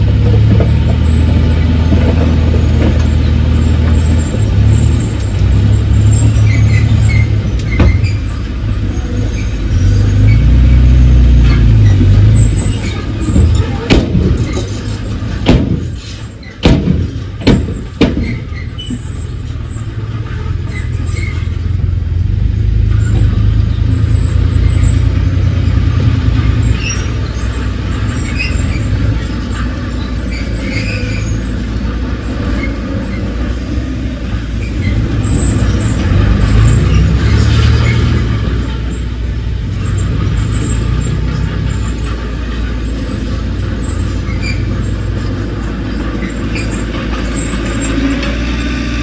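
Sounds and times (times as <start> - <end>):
sharp metallic knocks: 0.0 - 8.6, 11.3 - 19.6
diesel machinery rumbling: 0.0 - 49.0.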